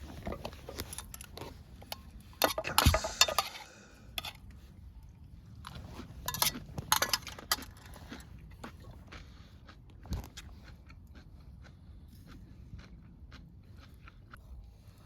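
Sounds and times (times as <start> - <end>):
utensils clinking on dish: 1.9 - 4.4, 6.2 - 7.9
crunchy chewing: 5.5 - 15.0.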